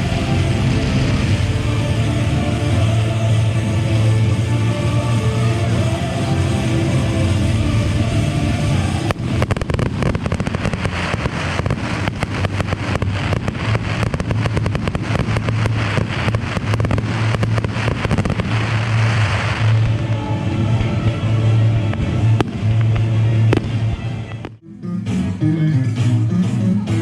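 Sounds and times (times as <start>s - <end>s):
fireworks crackling: 0.0s - 24.6s
show music with bass: 0.0s - 27.0s.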